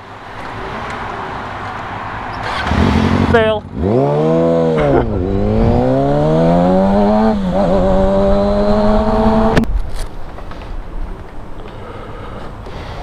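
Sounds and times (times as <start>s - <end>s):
background noise: 0.0s - 13.0s
vehicle engine accelerating: 0.4s - 9.7s.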